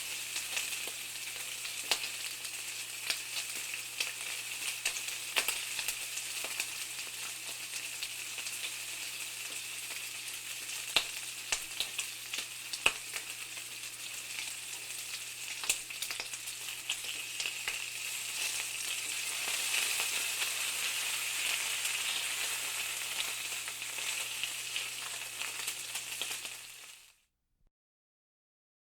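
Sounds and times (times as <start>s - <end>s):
bacon sizzling in a pan: 0.0s - 27.2s.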